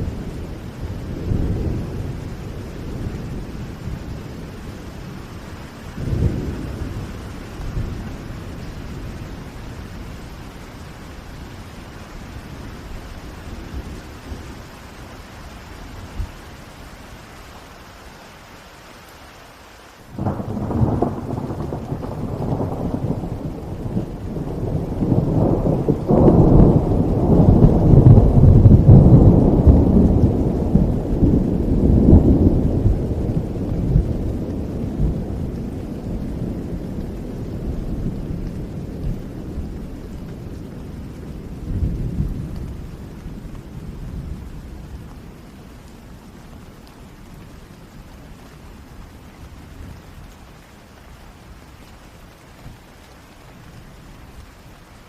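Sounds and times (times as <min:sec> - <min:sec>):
steady rain: 0:00.0 - 0:55.0
rolling peal of thunder: 0:20.1 - 0:44.7.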